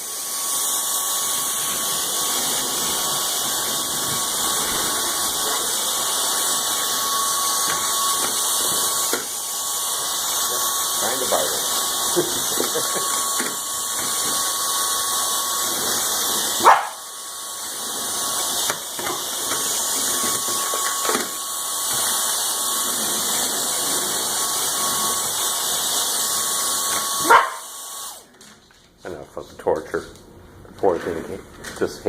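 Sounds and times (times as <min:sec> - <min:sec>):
vacuum cleaner running: 0:00.0 - 0:29.2
dog barking: 0:16.6 - 0:17.0, 0:27.2 - 0:27.7.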